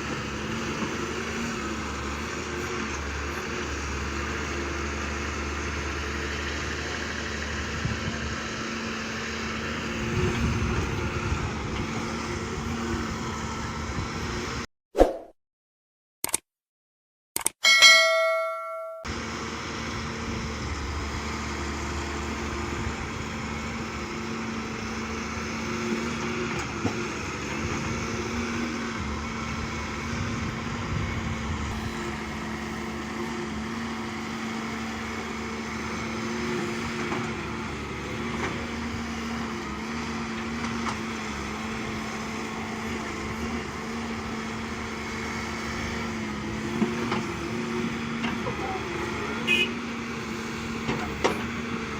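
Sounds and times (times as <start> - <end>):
diesel engine running: 0.0 - 14.6, 19.1 - 51.9.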